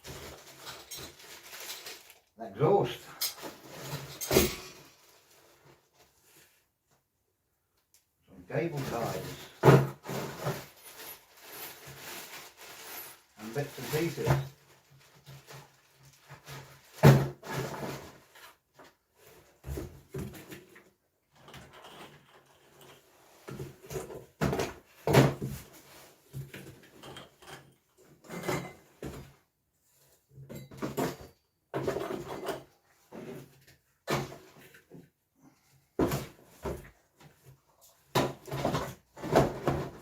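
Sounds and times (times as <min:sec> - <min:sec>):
packaging rustling: 0:00.0 - 0:02.3, 0:10.3 - 0:17.0.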